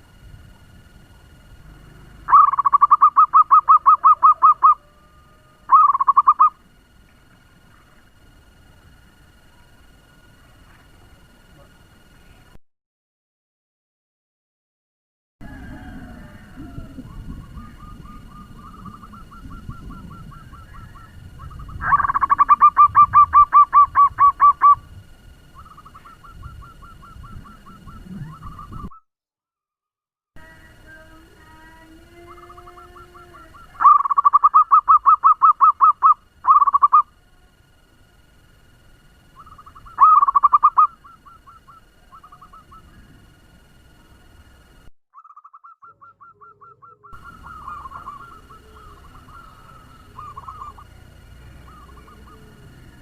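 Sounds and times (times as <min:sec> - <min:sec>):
dove fast staccato cooing: 0:02.1 - 0:06.6, 0:15.4 - 0:24.9, 0:25.5 - 0:29.0, 0:32.2 - 0:37.1, 0:39.4 - 0:43.1, 0:45.4 - 0:53.0.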